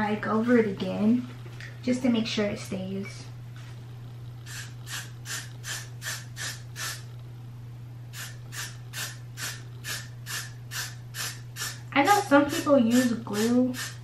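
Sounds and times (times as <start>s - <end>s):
steady low hum: 0.0s - 14.0s
spray can squirts: 4.5s - 7.0s, 8.2s - 11.8s, 12.5s - 14.0s.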